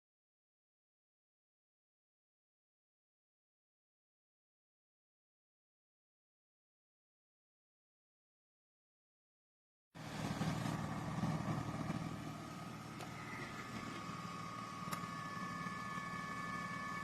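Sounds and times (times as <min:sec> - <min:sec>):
robot vacuum cleaner running: 0:10.0 - 0:17.0.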